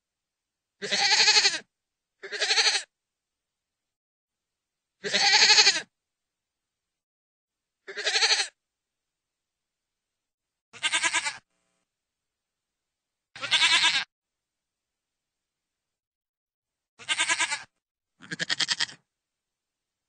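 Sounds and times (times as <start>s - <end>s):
goat bleating: 0.8s - 1.6s, 2.2s - 2.9s, 5.0s - 5.9s, 7.9s - 8.6s, 10.8s - 11.4s, 13.4s - 14.1s, 17.0s - 19.0s.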